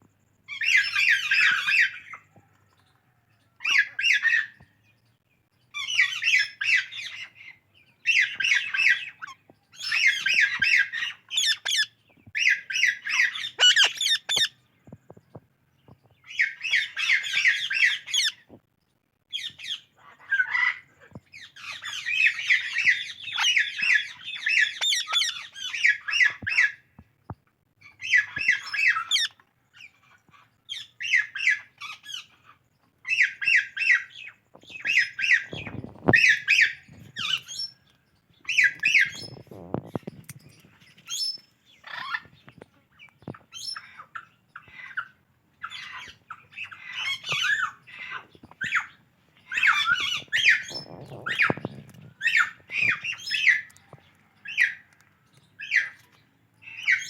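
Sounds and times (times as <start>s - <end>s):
parakeets squawking: 8.1s - 14.5s, 19.4s - 20.8s, 38.5s - 39.4s, 41.8s - 42.4s, 43.6s - 53.8s.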